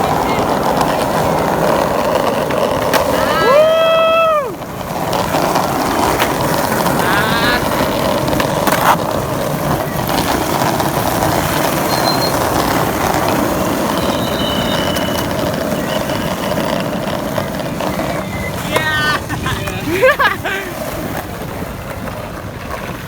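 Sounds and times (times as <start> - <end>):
skateboard clacks: 0.0 - 23.0
skateboard wheels rolling on pavement: 0.0 - 23.0.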